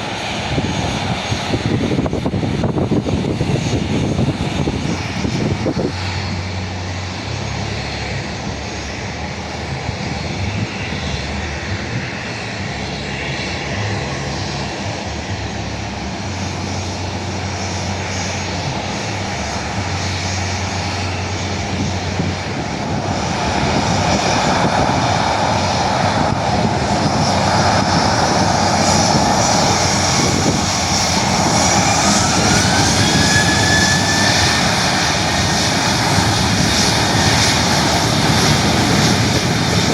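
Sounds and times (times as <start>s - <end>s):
jet engines roaring: 0.0s - 39.9s
thin rising whine: 27.2s - 39.9s.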